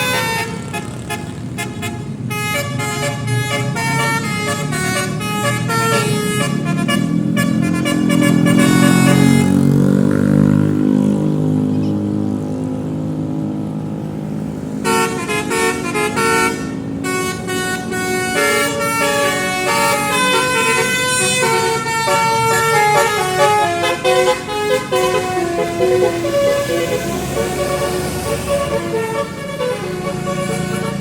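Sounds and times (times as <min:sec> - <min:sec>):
multi-tone bus horn melody: 0:00.0 - 0:11.0, 0:14.6 - 0:31.0.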